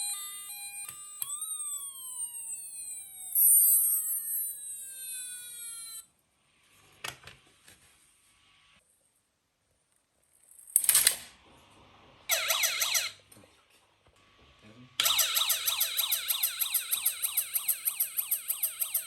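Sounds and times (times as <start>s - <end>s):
toy car electronic siren: 0.0s - 6.1s, 12.3s - 13.2s, 15.0s - 19.0s.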